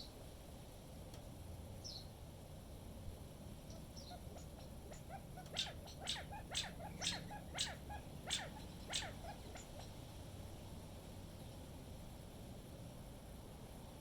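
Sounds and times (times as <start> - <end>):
animal high calls: 4.0 - 9.9.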